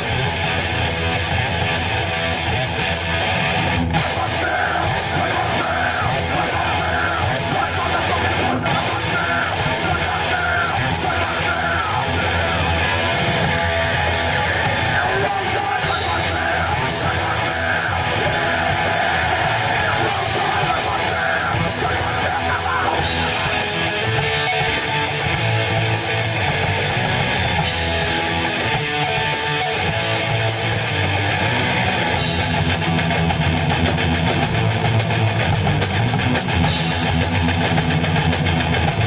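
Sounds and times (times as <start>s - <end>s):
distorted electric guitar: 0.0s - 39.0s
heavy rock band playing: 0.0s - 39.0s
person yelling vocals: 4.0s - 13.5s, 14.2s - 25.7s.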